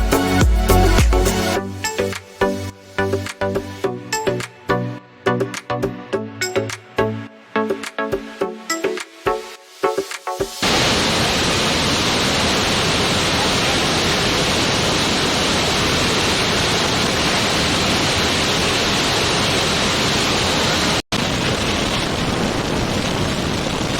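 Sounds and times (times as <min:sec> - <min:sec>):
music: 0:00.0 - 0:10.6
waterfall rushing: 0:09.6 - 0:23.9.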